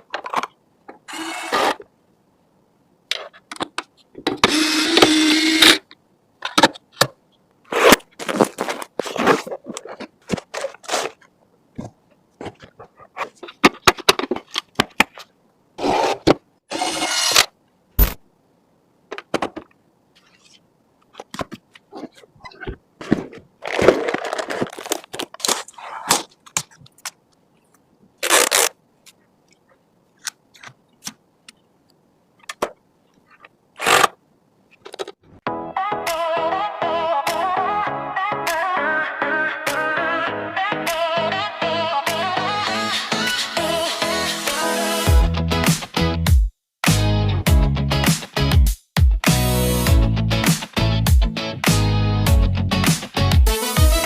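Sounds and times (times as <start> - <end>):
scraping and rustling: 7.7 - 17.4, 20.2 - 27.1.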